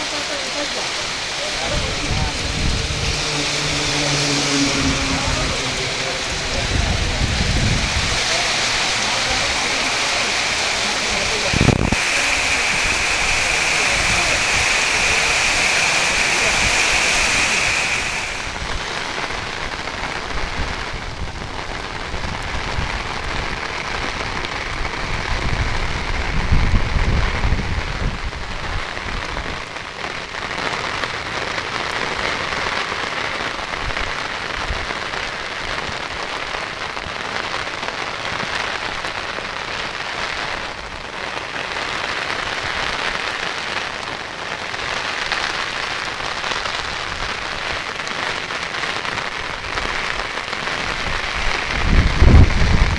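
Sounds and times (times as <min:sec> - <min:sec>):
heavy rain hissing: 0:00.0 - 0:28.9, 0:30.0 - 0:52.9
low rumble: 0:01.0 - 0:19.2.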